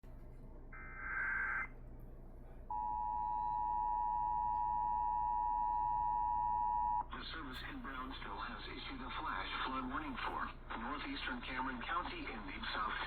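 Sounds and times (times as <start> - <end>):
two-tone attention signal: 2.7 - 7.1.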